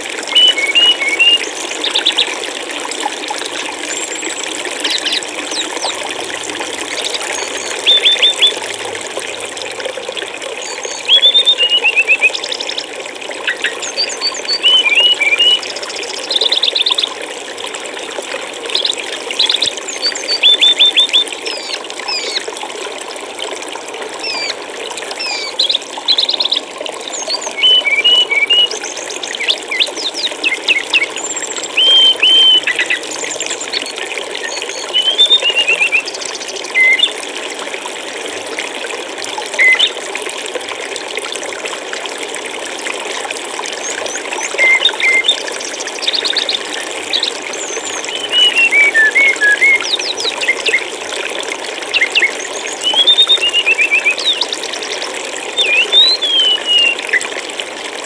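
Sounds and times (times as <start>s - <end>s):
running water trickling: 0.0s - 58.0s
songbirds chirping: 25.2s - 37.1s, 46.1s - 50.8s, 55.6s - 57.2s.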